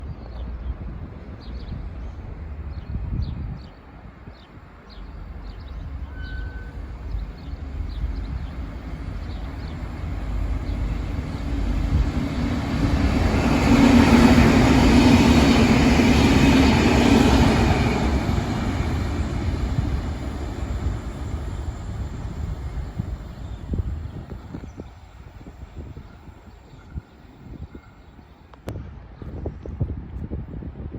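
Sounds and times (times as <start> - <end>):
train passing: 3.8 - 29.2
deep drone: 4.9 - 25.8.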